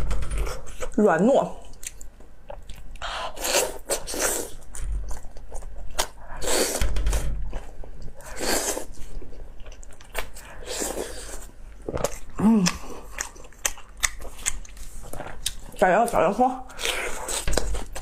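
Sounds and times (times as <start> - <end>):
chewing and mouth smacking: 1.6 - 3.6, 11.4 - 15.8.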